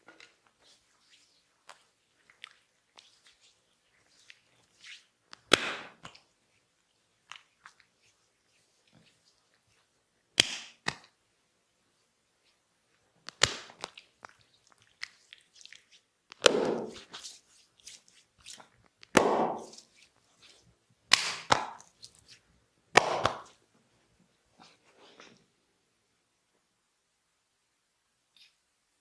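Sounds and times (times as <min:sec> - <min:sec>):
hand slaps on skin: 0:05.4 - 0:06.2, 0:10.4 - 0:11.1, 0:13.3 - 0:13.9, 0:19.1 - 0:19.8, 0:21.1 - 0:21.8, 0:22.9 - 0:23.6.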